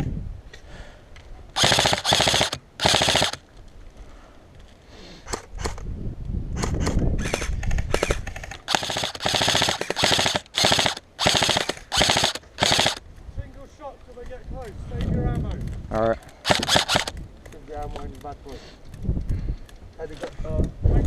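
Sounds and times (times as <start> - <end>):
airsoft rifle bursts: 1.6 - 3.4, 7.2 - 13.0, 16.4 - 17.2.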